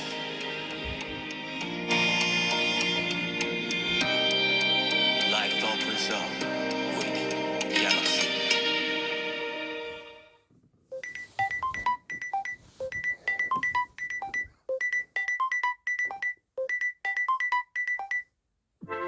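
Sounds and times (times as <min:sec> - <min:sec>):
bright plinking ringtone: 0:11.0 - 0:18.2.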